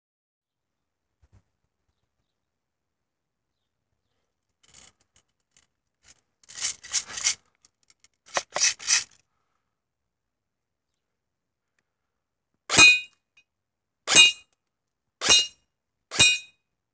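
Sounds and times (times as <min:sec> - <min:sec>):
bbs rattling in shaken magazine: 0:04.6 - 0:09.2.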